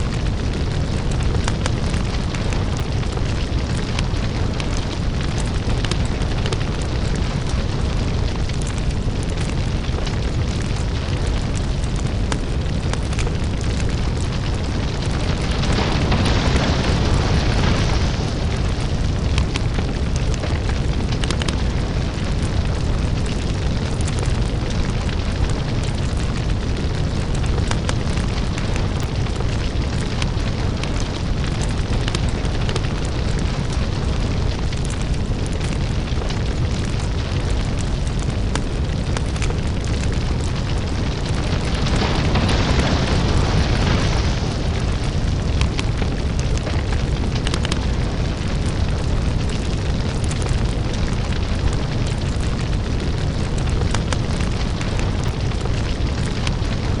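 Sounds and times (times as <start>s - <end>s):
deep rumble: 0.0s - 57.0s
lava crackling and popping: 0.0s - 57.0s.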